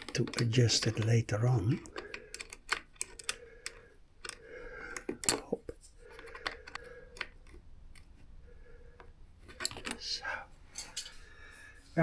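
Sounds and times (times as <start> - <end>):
hand tools tapping on metal: 0.0 - 7.6.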